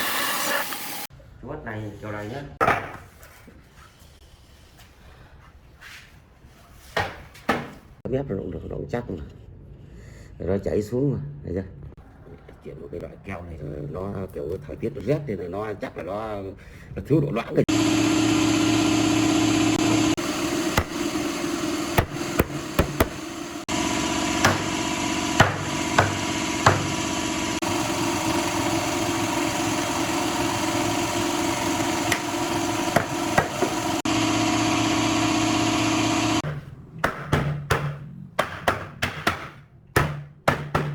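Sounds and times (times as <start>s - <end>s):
machine humming: 17.7s - 36.4s
sharp knocks and taps: 25.4s - 26.9s.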